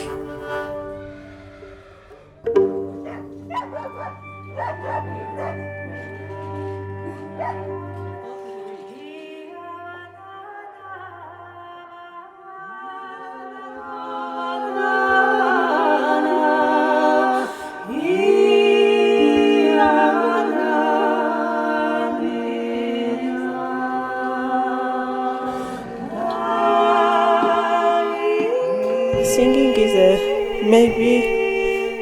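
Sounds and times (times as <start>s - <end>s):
group singing in harmony: 0.0s - 32.0s.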